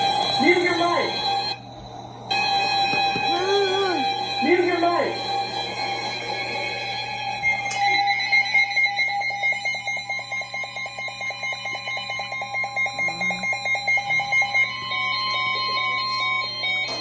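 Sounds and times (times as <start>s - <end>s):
steady high electronic tone: 0.0s - 10.6s.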